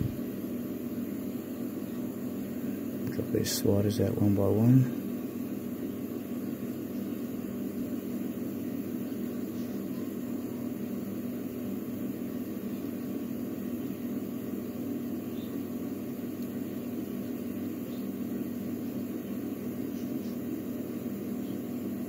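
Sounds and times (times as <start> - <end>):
low hum with hiss: 0.0 - 22.0.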